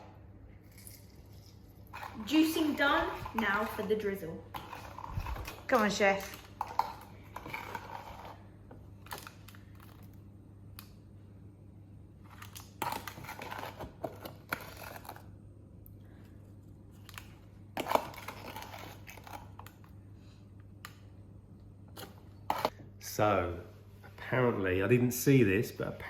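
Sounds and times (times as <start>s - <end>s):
low steady hum: 0.0s - 26.0s
scraping and rustling: 1.9s - 8.5s.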